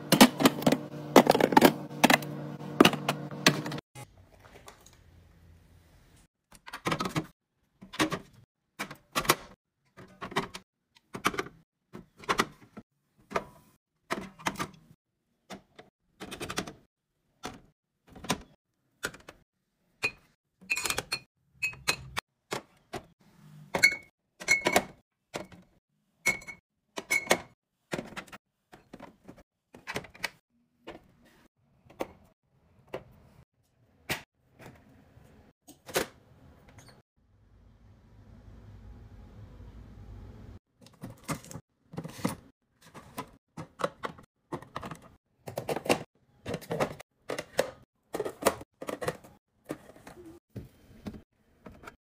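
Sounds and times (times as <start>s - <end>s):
containers clicking and knocking: 40.8s - 50.3s.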